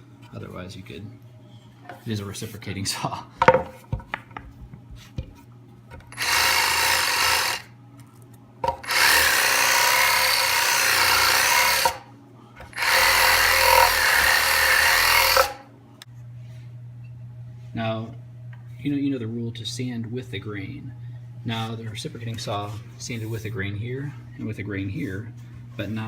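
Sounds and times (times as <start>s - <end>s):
reciprocating saw sanding wood: 6.1s - 7.7s, 8.8s - 12.1s, 12.7s - 15.6s.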